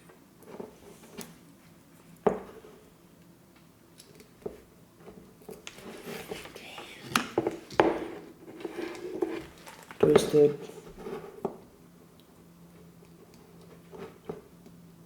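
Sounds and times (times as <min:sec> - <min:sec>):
rustling and scraping: 0:00.4 - 0:02.9, 0:04.5 - 0:11.7, 0:12.7 - 0:14.5.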